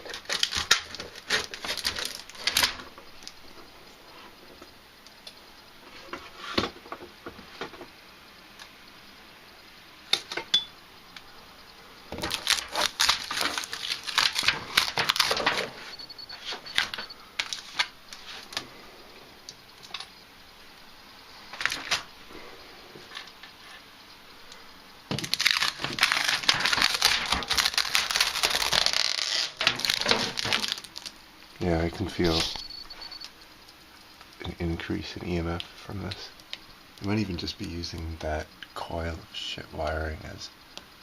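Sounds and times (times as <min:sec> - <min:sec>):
aluminium foil crinkling: 0:00.0 - 0:03.4, 0:12.2 - 0:18.7, 0:21.5 - 0:22.1, 0:25.1 - 0:31.2, 0:31.8 - 0:33.3.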